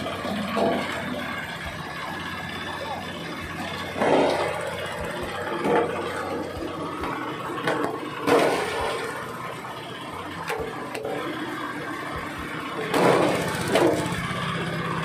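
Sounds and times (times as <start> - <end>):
husk shredder engine running: 0.0 - 15.0.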